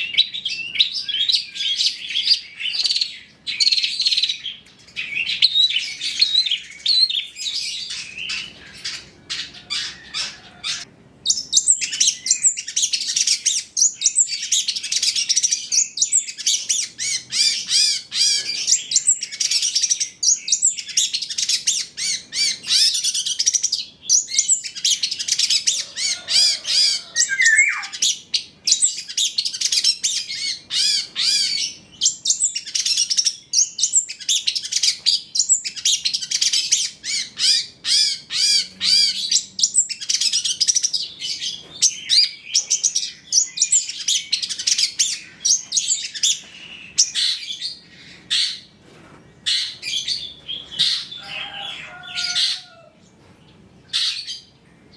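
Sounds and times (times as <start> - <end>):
shrike singing: 24.2 - 29.1.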